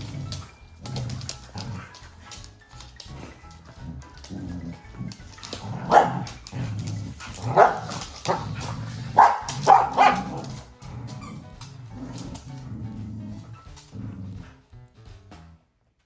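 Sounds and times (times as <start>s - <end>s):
dogs barking: 4.4s - 12.4s.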